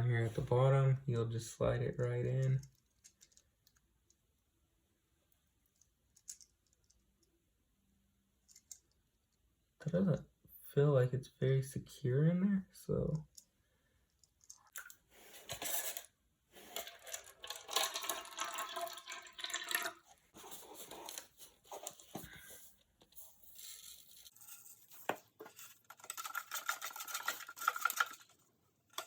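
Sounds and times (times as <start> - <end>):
liquid sloshing: 16.7 - 20.3.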